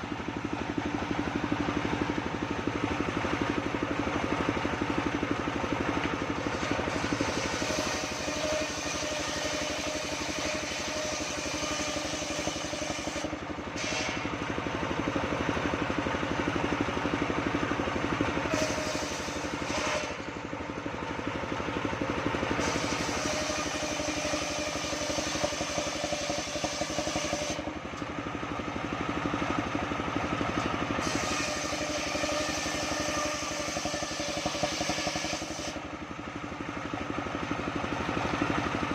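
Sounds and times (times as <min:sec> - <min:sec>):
sawmill sawing timber: 0:00.0 - 0:21.2, 0:22.1 - 0:28.3, 0:30.4 - 0:36.0.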